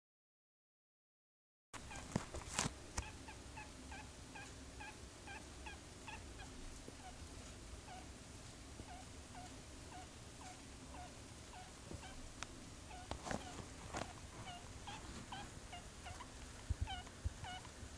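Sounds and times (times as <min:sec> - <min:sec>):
pet squeaking: 0:03.0 - 0:07.2, 0:07.8 - 0:08.1, 0:08.8 - 0:12.3, 0:12.9 - 0:17.7.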